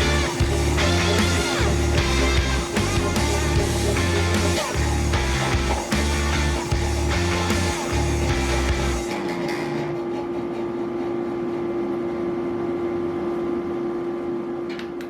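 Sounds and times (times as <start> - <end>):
rock music: 0.0 - 10.0.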